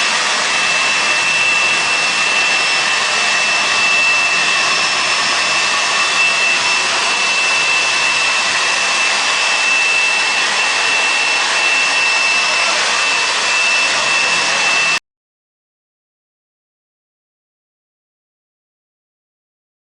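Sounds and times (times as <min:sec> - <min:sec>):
carpet cleaner motor whining: 0:00.0 - 0:15.0.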